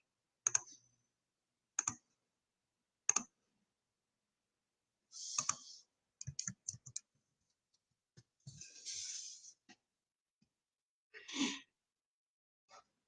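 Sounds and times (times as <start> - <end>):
keyboard and mouse clicks: 0.4 - 0.7, 1.8 - 2.0, 3.1 - 3.4, 5.4 - 7.1.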